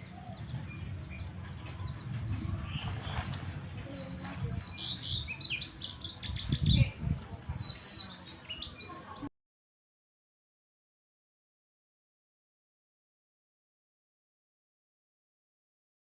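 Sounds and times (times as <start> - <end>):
bird twittering in high chirps: 0.0 - 9.3.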